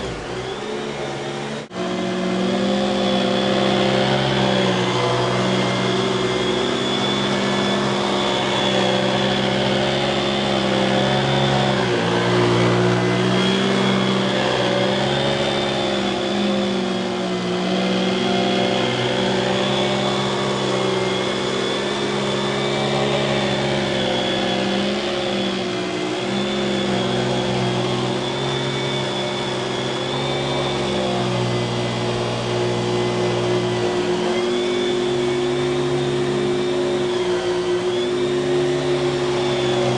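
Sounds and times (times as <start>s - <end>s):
vacuum cleaner motor running: 0.0s - 39.9s.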